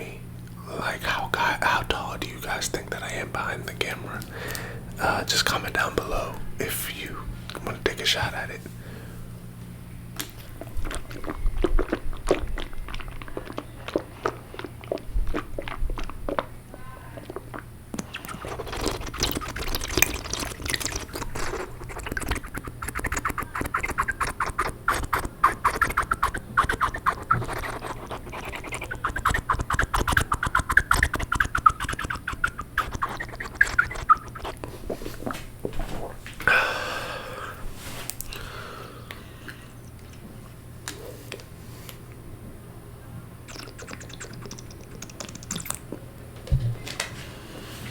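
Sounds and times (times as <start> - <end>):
lip smacks: 0.0 - 6.4, 10.2 - 16.6, 17.2 - 36.6, 38.0 - 42.0, 43.5 - 46.0
tongue clicks: 17.2 - 34.6, 43.5 - 46.0.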